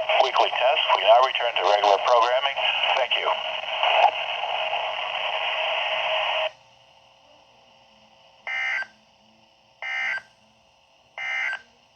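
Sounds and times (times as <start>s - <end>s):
loud radio static: 0.0s - 6.5s.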